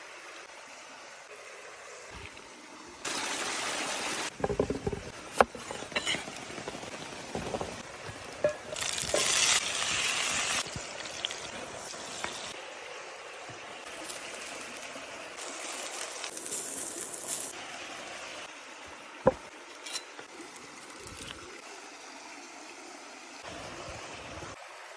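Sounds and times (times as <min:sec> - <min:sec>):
food sizzling over fire: 0:00.0 - 0:24.9.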